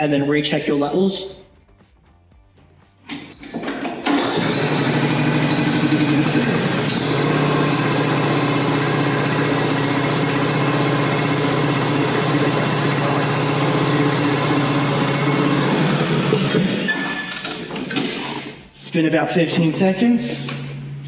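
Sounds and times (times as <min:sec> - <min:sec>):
ride-on mower engine running: 0:03.8 - 0:17.2.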